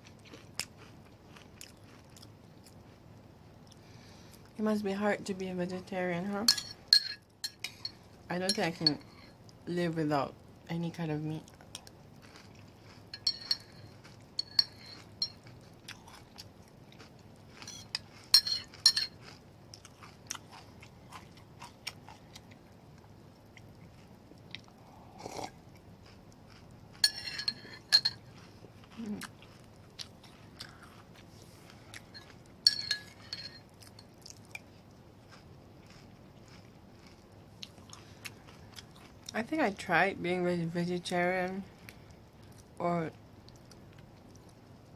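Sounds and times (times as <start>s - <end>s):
crunchy chewing of cereal: 0.0s - 4.5s, 11.4s - 39.4s
spoon clinking against dish: 6.5s - 9.2s, 13.1s - 15.4s, 17.6s - 19.2s, 27.0s - 28.2s, 32.6s - 34.1s.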